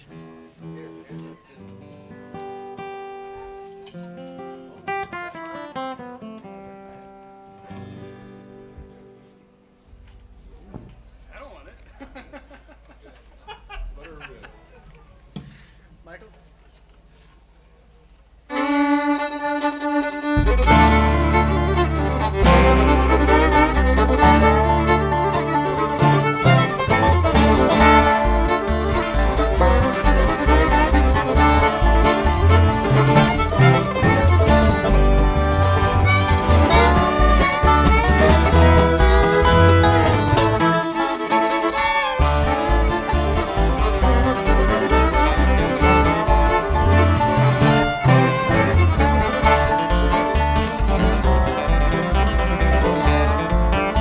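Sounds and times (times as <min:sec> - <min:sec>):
acoustic guitar picked: 0:00.0 - 0:10.2, 0:20.2 - 0:54.0
bluegrass fiddle melody: 0:18.5 - 0:54.0
string band playing: 0:18.5 - 0:54.0.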